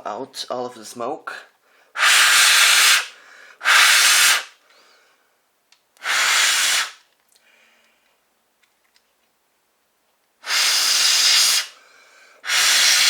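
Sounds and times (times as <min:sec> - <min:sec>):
forceful puffs of breath: 0:01.6 - 0:05.3, 0:06.0 - 0:07.8, 0:10.4 - 0:13.0.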